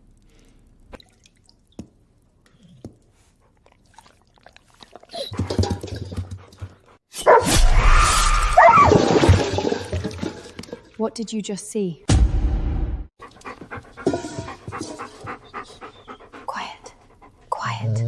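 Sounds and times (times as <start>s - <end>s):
dog whining and barking: 7.2s - 7.5s, 8.5s - 9.0s.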